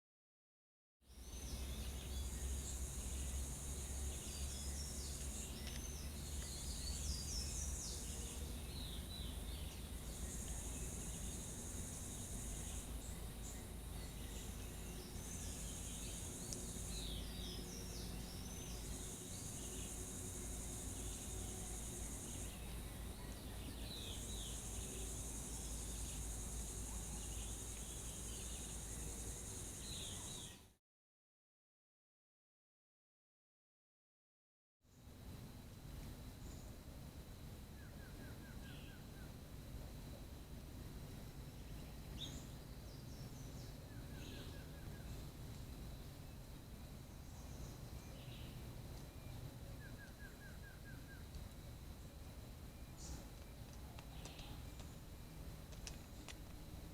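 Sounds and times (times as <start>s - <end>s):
high insect buzz: 7.1s - 23.0s, 23.8s - 30.6s.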